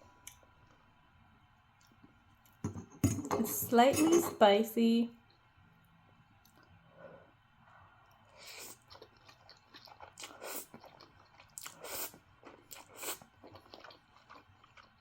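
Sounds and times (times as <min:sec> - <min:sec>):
wet chewing sounds: 0:08.1 - 0:15.0.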